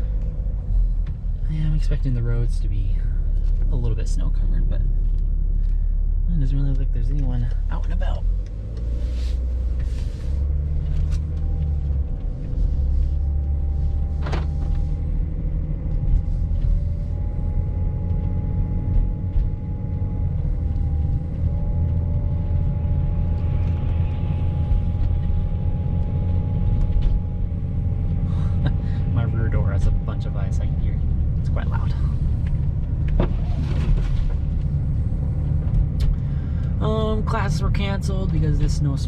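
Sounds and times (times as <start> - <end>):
engine and tyres rumbling: 0.0 - 39.0.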